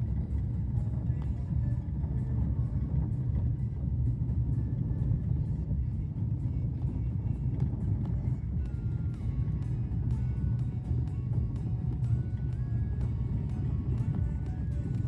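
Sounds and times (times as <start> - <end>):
vehicle engine rumble: 0.0 - 15.0.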